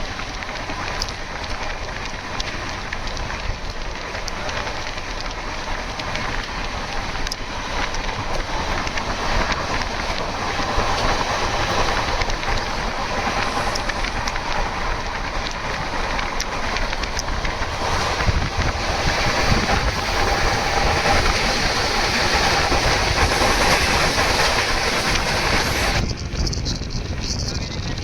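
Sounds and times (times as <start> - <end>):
sharp clicks of wheels: 0.0 - 28.0
train wheels rumbling on track: 0.0 - 28.0.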